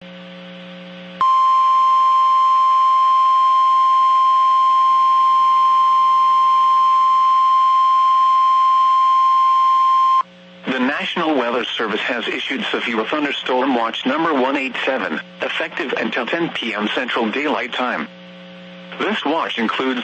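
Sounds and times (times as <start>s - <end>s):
steady warning alarm tone: 1.2s - 10.2s.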